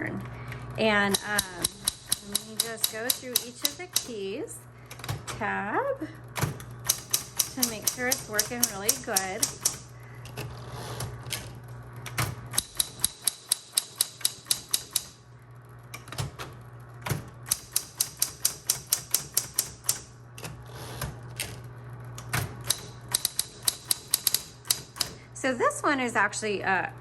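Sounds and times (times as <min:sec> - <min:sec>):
typewriter motor hum: 0:00.0 - 0:26.2
typewriter key strikes: 0:01.1 - 0:04.2, 0:06.4 - 0:09.9, 0:12.1 - 0:15.2, 0:17.0 - 0:20.5, 0:22.2 - 0:25.2.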